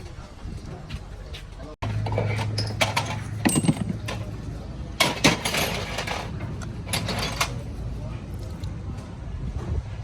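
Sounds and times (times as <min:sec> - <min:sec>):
metal tools clinking: 0:02.0 - 0:07.7.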